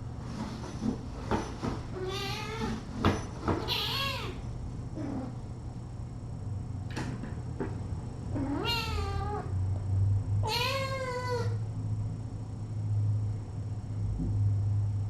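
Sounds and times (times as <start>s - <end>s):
cat meowing: 2.0s - 2.8s, 3.6s - 4.4s, 8.4s - 9.5s, 10.4s - 11.6s.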